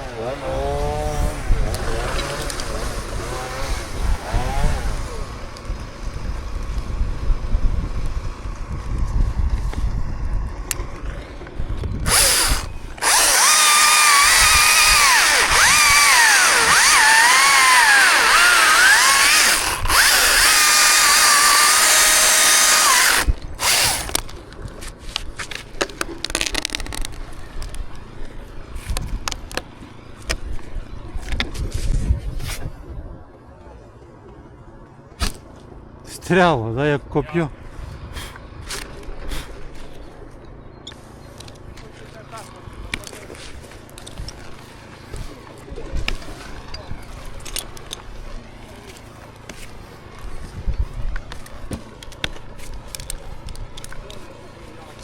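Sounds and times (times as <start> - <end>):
chainsaw cutting: 0.0 - 6.0, 12.0 - 24.4
low rumbling: 0.0 - 55.0.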